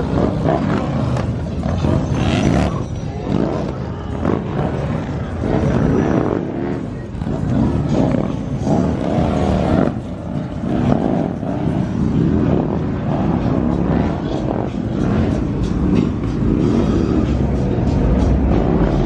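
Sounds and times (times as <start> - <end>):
car engine revving: 0.0 - 19.0
crowd and street noise: 0.0 - 19.0.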